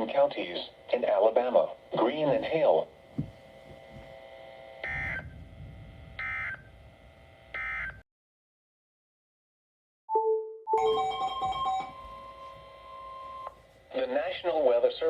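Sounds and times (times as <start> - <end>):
faint steady hum: 0.0 - 8.0, 10.8 - 15.0
buzzy digital tone bursts: 4.8 - 7.9.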